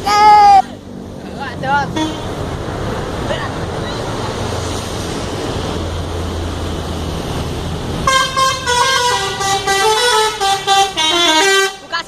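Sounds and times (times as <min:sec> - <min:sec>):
low engine hum: 0:00.0 - 0:12.0
multi-tone air horn melody: 0:01.9 - 0:02.3, 0:08.1 - 0:12.0.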